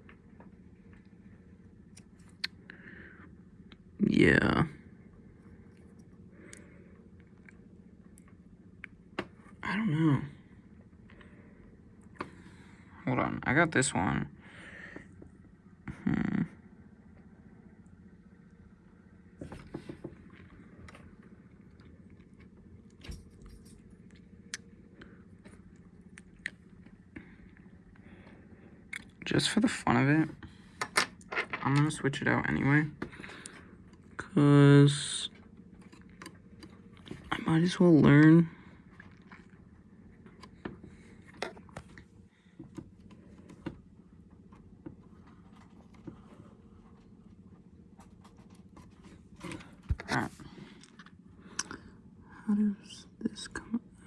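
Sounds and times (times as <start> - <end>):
low steady hum: 0.0 - 54.0.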